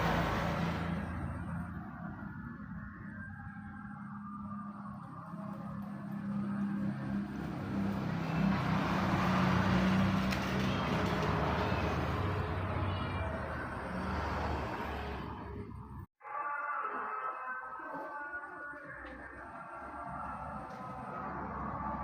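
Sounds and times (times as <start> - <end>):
vehicle passing: 0.0 - 2.6, 4.7 - 16.1, 19.9 - 22.0
low engine hum: 0.0 - 3.0.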